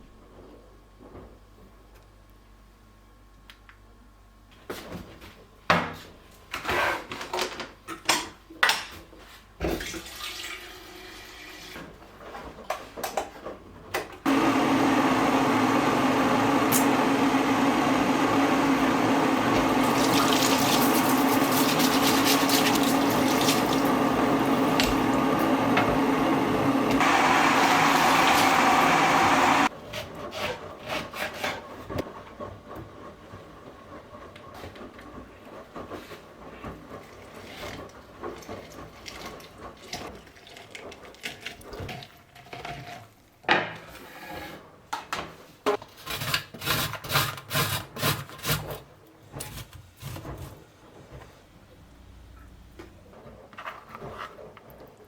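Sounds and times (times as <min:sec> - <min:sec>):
water running from a tap: 0:18.6 - 0:29.7.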